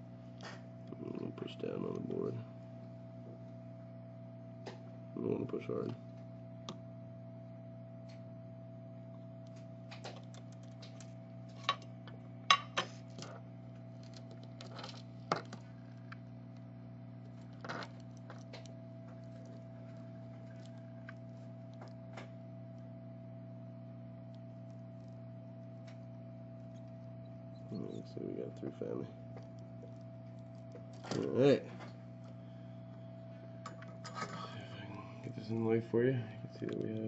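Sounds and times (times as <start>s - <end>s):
steady electrical hum: 0.0s - 37.0s
small tools tapping circuit board: 9.4s - 13.3s, 17.3s - 22.4s, 36.5s - 37.0s.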